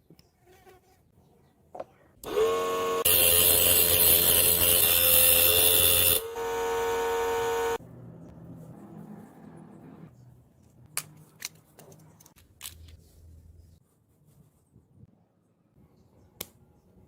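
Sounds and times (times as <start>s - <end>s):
small electric motor whining: 2.2s - 7.8s.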